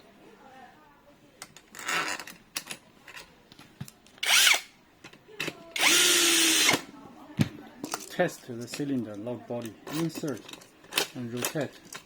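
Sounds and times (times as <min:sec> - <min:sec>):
electric screwdriver running: 0:04.2 - 0:04.7, 0:05.8 - 0:06.8.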